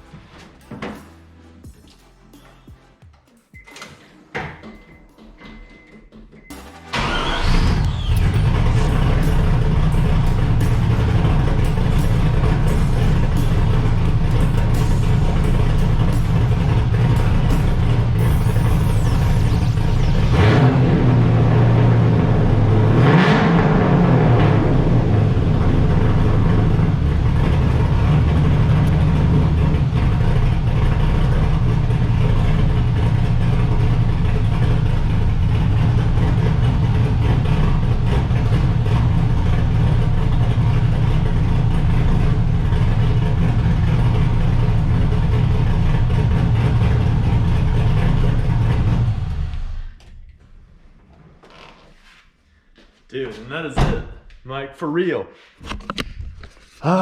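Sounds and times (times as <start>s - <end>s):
car engine idling and revving: 5.5s - 50.6s.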